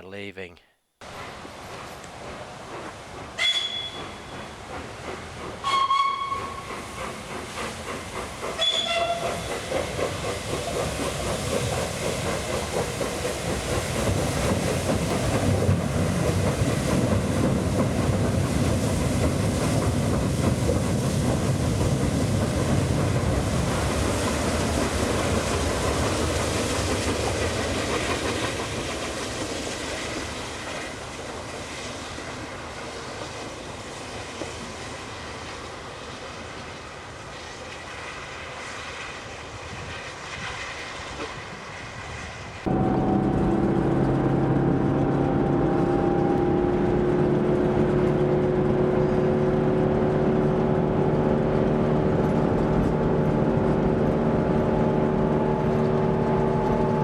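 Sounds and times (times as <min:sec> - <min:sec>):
steam train running past: 0:00.0 - 0:57.0
steam locomotive chime whistle: 0:03.4 - 0:04.6, 0:05.6 - 0:06.8, 0:08.6 - 0:09.5.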